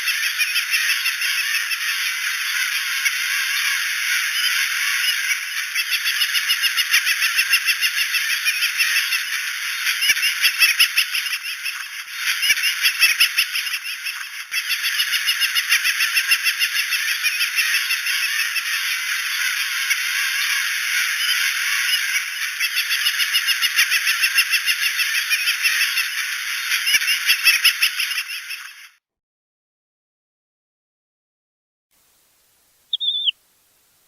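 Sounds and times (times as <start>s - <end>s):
shorebirds chattering: 32.9s - 33.3s.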